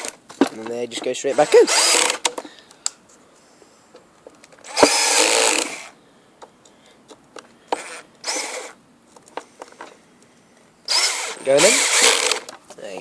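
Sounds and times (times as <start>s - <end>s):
cordless screwdriver whirring: 1.3s - 2.3s, 4.6s - 5.9s, 7.7s - 8.8s, 10.9s - 12.5s.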